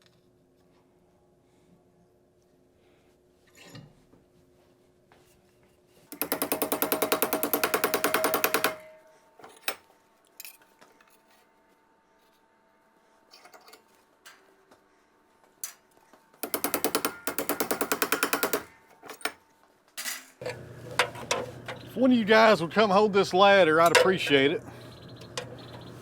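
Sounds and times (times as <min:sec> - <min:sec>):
power tool hammering: 0:06.1 - 0:09.0, 0:16.4 - 0:18.8
handling knocks and clicks: 0:20.4 - 0:21.9, 0:23.8 - 0:24.4, 0:25.2 - 0:25.9.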